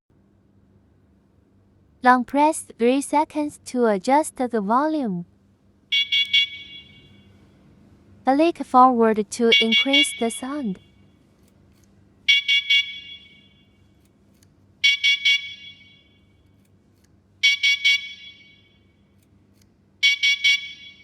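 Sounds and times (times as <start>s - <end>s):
electronic horn high beeps: 5.9s - 7.4s, 9.5s - 11.0s, 12.3s - 13.8s, 14.8s - 16.4s, 17.4s - 18.8s, 20.0s - 21.0s.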